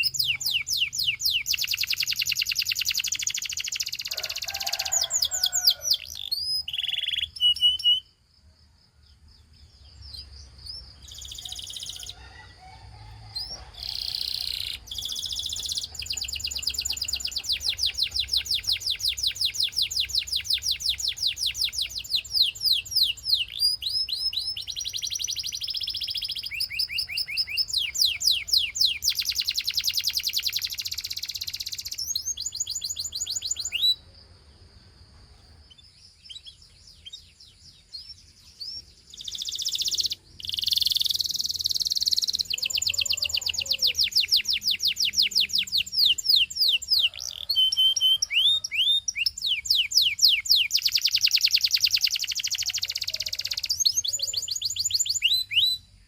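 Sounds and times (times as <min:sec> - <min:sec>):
canary singing trills: 0:00.0 - 0:08.4, 0:09.3 - 0:34.1, 0:35.4 - 0:56.0.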